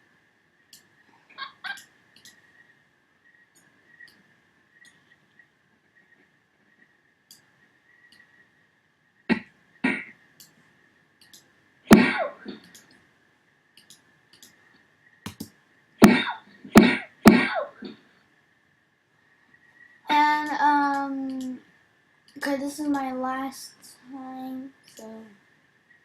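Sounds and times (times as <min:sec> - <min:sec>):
punch sound effects: 0:11.9 - 0:12.2, 0:16.0 - 0:17.6.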